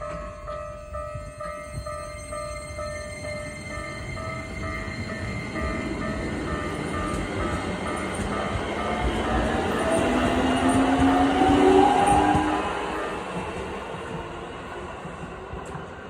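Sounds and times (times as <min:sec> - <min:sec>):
train rumble: 0:00.0 - 0:16.0.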